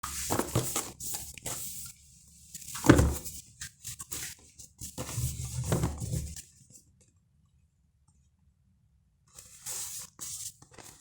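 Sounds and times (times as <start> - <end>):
box packaging rustling and scraping: 0.0 - 6.6, 9.4 - 11.0.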